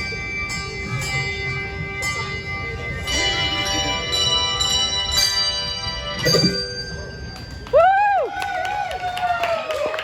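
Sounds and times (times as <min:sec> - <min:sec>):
handbell choir ringing chords: 0:00.0 - 0:07.6.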